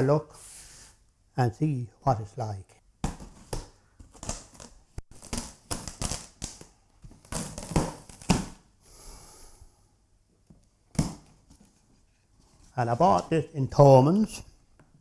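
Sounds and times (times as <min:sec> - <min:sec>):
packaging crinkling and tearing: 0:03.2 - 0:08.6.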